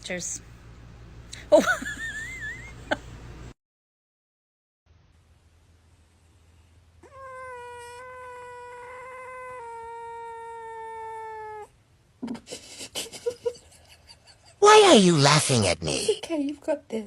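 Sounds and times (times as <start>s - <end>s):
cat yowling: 7.0s - 11.7s.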